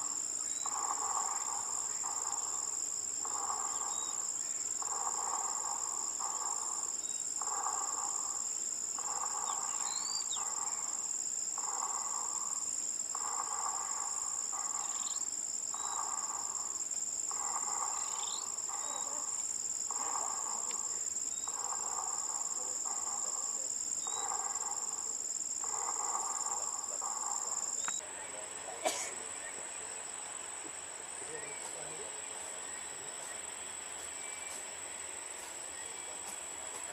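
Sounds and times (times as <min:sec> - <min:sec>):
insects trilling: 0:00.0 - 0:36.9.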